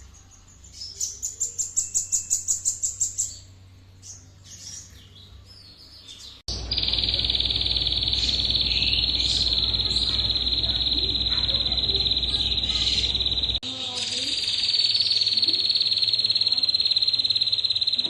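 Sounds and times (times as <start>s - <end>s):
songbird chirping: 0.0s - 18.0s
shrill trill: 6.5s - 18.0s.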